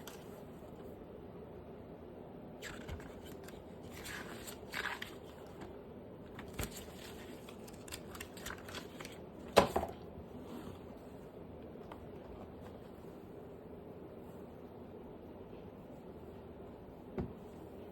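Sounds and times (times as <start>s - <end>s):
packaging rustling and scraping: 2.6s - 9.2s.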